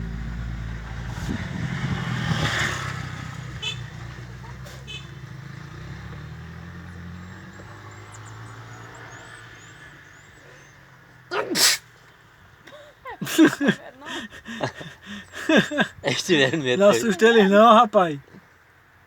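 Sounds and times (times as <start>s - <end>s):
low engine hum: 0.0s - 11.2s.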